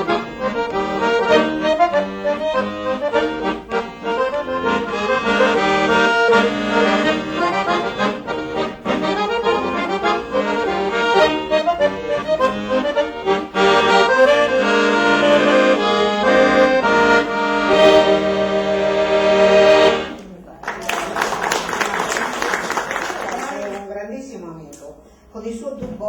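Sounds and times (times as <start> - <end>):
accordion playing chords: 0.0 - 20.3.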